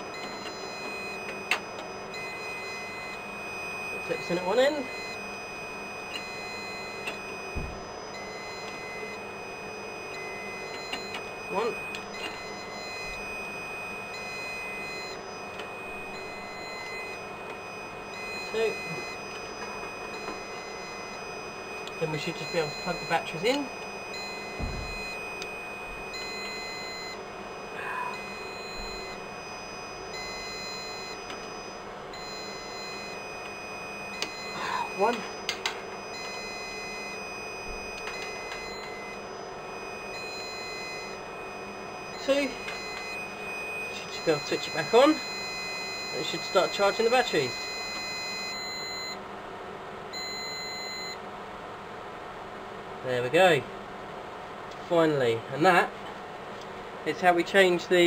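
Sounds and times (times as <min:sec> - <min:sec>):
high beeping tone: 0:00.0 - 0:49.2
electronic whine of equipment: 0:00.0 - 0:55.9, 0:56.6 - 0:58.0
low thump: 0:07.6 - 0:07.8, 0:24.6 - 0:25.2.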